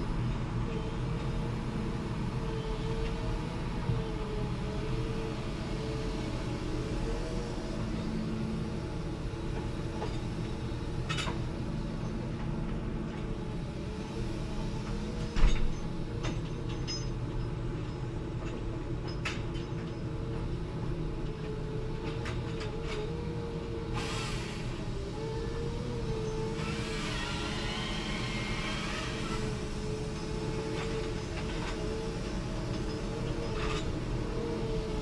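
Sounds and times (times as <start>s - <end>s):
machine engine running: 24.2s - 34.2s.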